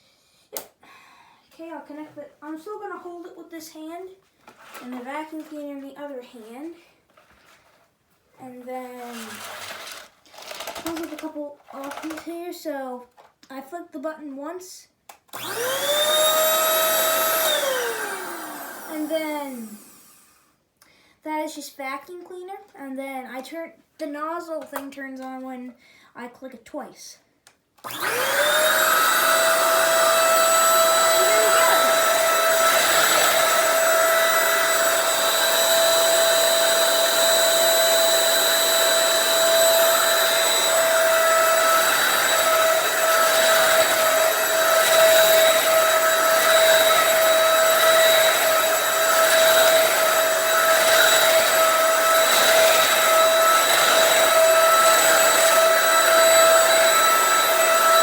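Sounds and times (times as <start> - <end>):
vacuum cleaner motor whining: 15.4 - 20.4, 27.8 - 58.0.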